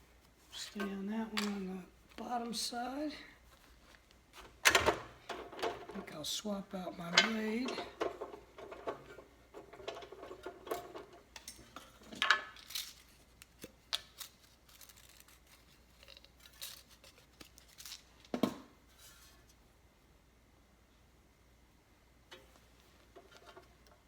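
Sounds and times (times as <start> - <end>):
clicks and knocks of tools handled: 0.8 - 1.7.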